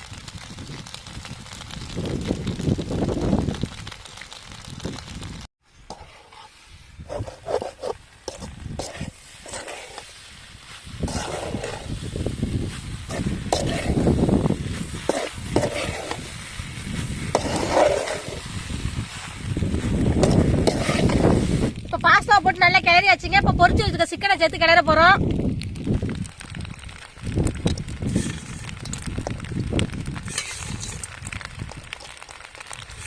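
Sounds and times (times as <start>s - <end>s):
light sizzle: 0.0s - 33.0s
pasta scraped in cooking pan: 5.8s - 21.8s, 26.8s - 33.0s.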